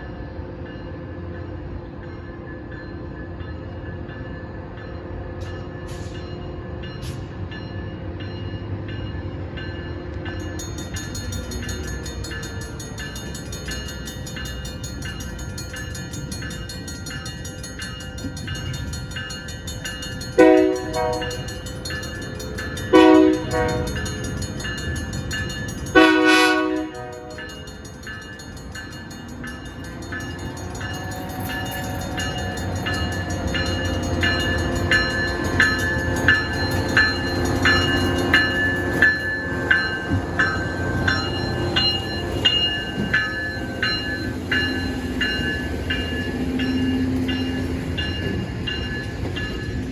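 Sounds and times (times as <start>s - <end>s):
moving train rumble: 0.0s - 49.9s
locomotive horn blasts: 20.4s - 21.4s, 22.9s - 24.0s, 26.0s - 27.4s.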